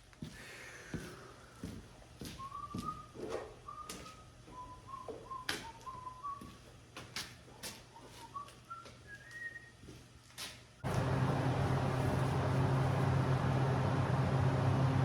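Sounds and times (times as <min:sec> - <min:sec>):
man whistling a tune: 0:02.3 - 0:06.7, 0:08.0 - 0:09.8.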